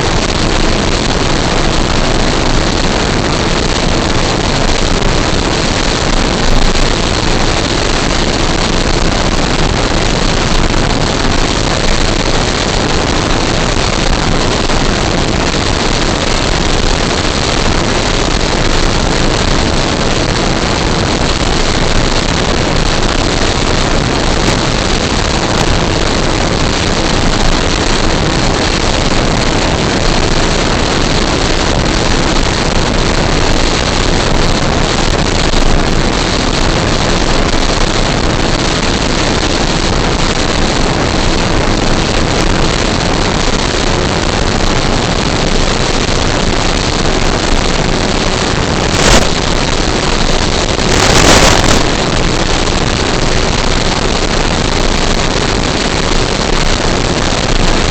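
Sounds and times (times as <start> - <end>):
propeller and wind rush: 0.0 - 57.9
high electric motor whine: 47.5 - 53.2.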